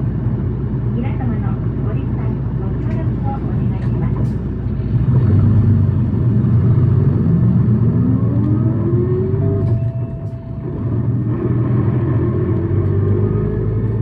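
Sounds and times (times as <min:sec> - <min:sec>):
bus engine revving: 0:04.2 - 0:14.0.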